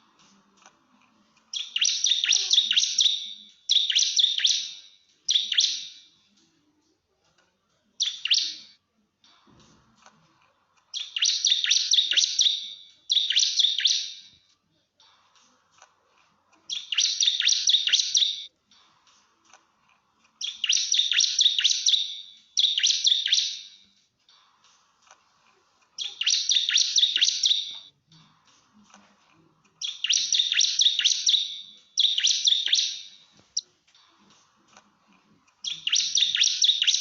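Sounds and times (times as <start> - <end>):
bird singing rapid high chirps: 1.5 - 6.1, 8.0 - 8.8, 10.9 - 14.4, 16.7 - 18.5, 20.4 - 23.8, 26.0 - 27.9, 29.8 - 33.6, 35.6 - 37.0.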